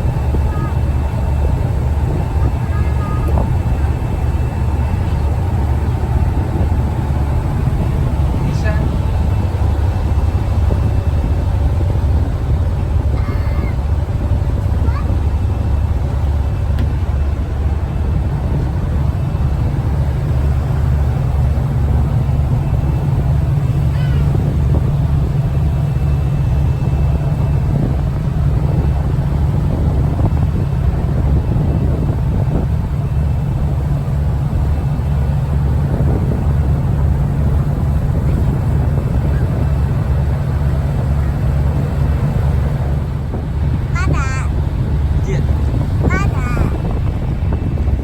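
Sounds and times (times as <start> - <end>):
ship diesel engine drone: 0.0 - 48.0.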